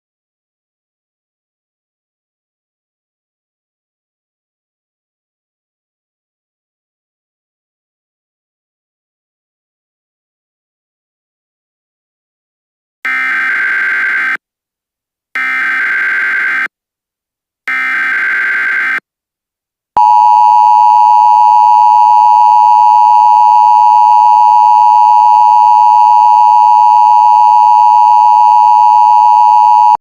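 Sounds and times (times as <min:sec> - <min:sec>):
two-tone attention signal: 0:20.0 - 0:30.0.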